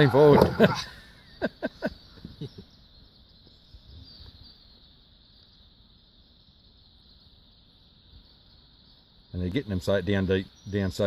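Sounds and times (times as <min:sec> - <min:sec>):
insect chorus: 0:00.0 - 0:11.0.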